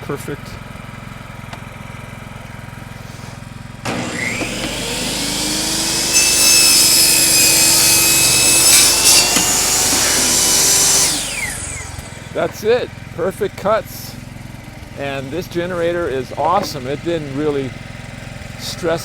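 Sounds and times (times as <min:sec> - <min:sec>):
generator engine hum: 0:00.0 - 0:19.0
saw blade cutting wood: 0:03.0 - 0:13.0, 0:15.0 - 0:17.8
table saw motor whining: 0:03.8 - 0:19.0.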